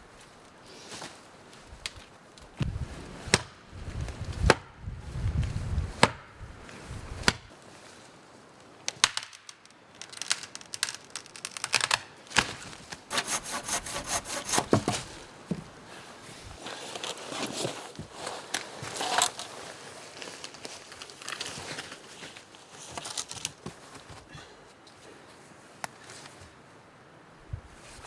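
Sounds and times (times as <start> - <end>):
rapid repeated strokes: 13.1 - 14.9.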